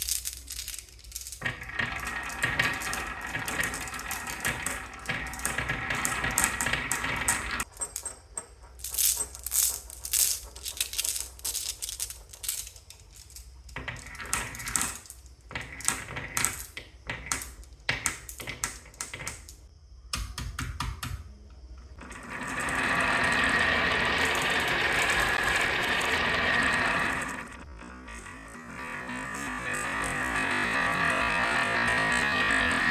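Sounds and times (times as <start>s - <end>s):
marbles clattering down track: 0.0s - 19.7s, 22.0s - 32.9s
marbles rolling along track: 0.0s - 19.7s, 21.9s - 32.9s.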